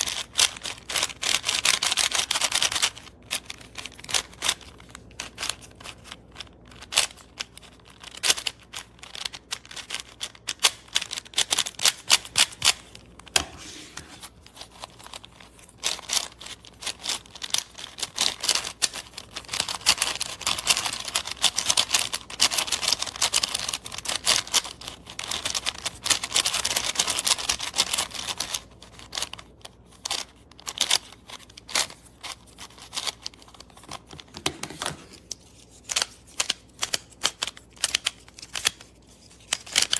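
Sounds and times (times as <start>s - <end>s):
speed cube clicking: 0.0s - 4.7s, 6.8s - 12.8s, 15.8s - 29.4s, 35.8s - 38.9s.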